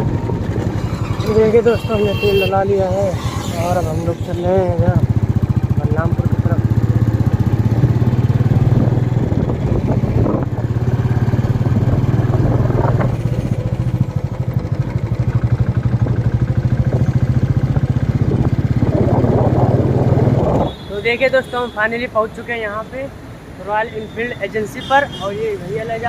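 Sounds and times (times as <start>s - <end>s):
motorcycle engine running: 0.0s - 20.8s.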